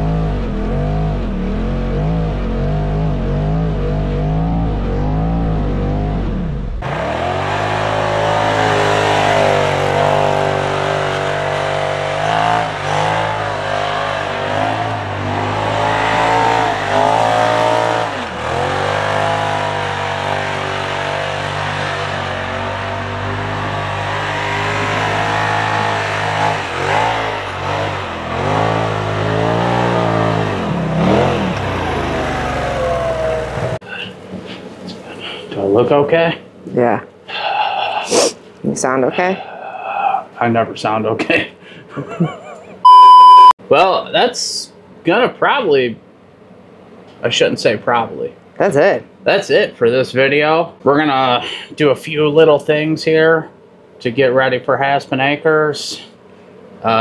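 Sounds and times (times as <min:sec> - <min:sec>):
engine revving up and down: 0:00.0 - 0:34.1.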